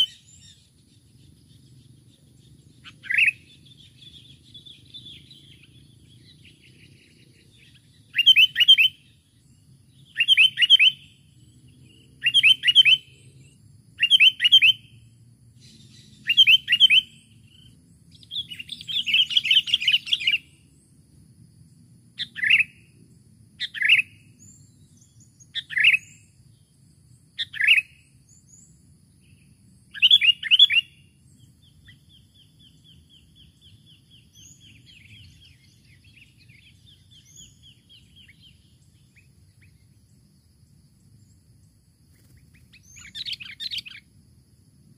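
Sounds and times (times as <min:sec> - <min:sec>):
bulbul calling: 0:00.0 - 0:09.3, 0:09.9 - 0:15.0, 0:15.6 - 0:20.6, 0:22.2 - 0:22.8, 0:23.6 - 0:24.5, 0:25.3 - 0:26.3, 0:27.4 - 0:28.7, 0:29.3 - 0:39.9, 0:42.2 - 0:44.1
faint rapid bird twittering: 0:00.0 - 0:44.9.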